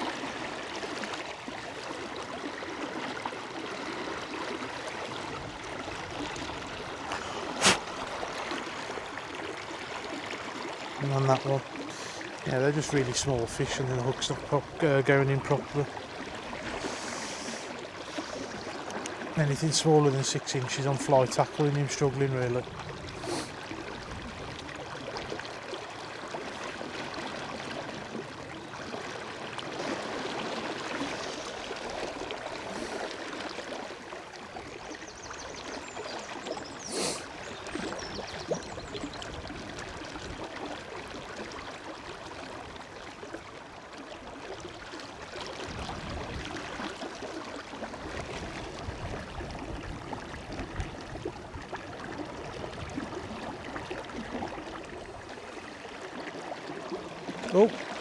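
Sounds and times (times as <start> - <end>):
river water rushing over riffle: 0.0 - 34.4, 39.2 - 58.0
wind buffeting microphone: 45.6 - 46.6.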